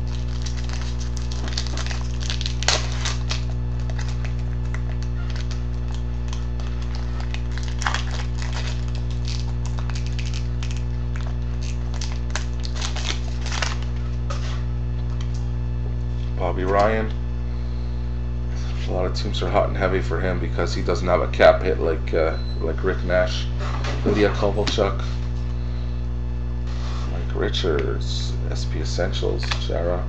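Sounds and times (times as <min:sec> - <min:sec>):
cards and foil wrapper rustling: 0:00.0 - 0:14.6, 0:29.3 - 0:29.8
electrical mains hum: 0:00.0 - 0:30.0.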